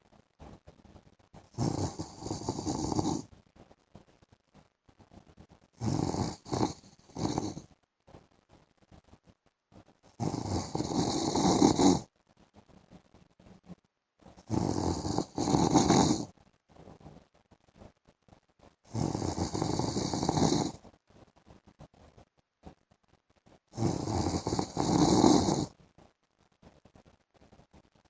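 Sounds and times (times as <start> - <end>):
man snoring: 1.6 - 3.2, 5.8 - 7.6, 10.2 - 12.0, 14.5 - 16.3, 18.9 - 20.8, 23.8 - 25.7.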